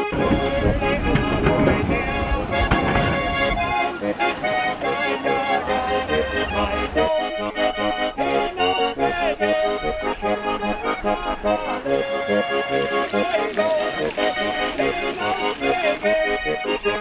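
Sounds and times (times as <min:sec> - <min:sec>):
lively accordion music: 0:00.0 - 0:17.0.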